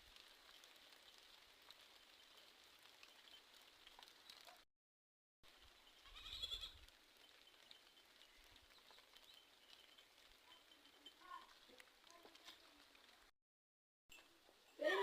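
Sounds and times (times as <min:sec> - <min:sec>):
goat bleating: 0:06.0 - 0:06.8.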